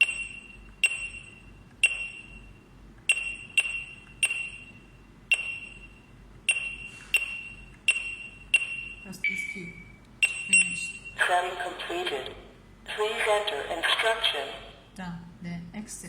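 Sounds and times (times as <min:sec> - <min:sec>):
keypad beeping: 0:00.0 - 0:02.4, 0:06.5 - 0:12.3.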